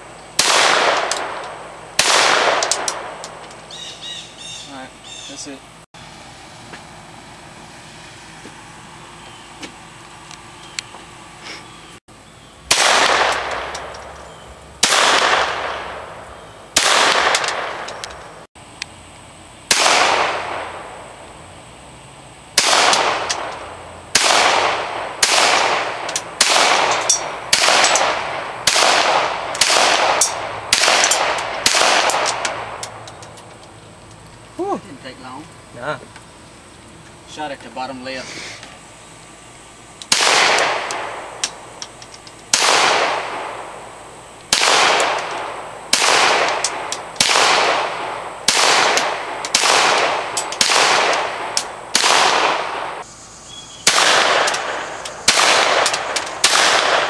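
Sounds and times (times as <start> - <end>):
pistol gunshots: 0.4 - 3.4, 12.7 - 14.1, 14.8 - 18.3, 19.7 - 20.9, 22.6 - 33.1, 40.1 - 41.7, 42.5 - 43.7, 44.5 - 53.0, 53.8 - 57.0.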